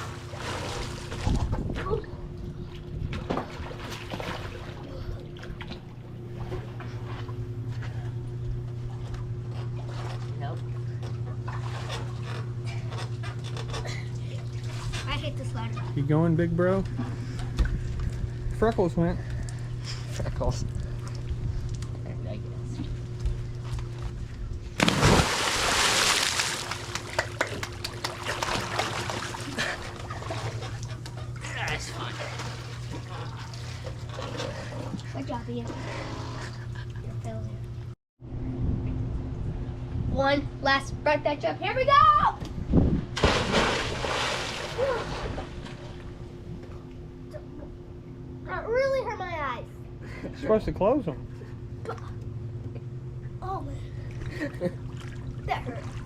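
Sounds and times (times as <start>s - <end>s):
steady low hum: 0.0s - 56.0s
water splashing around swimmer: 24.8s - 35.1s, 43.2s - 46.0s.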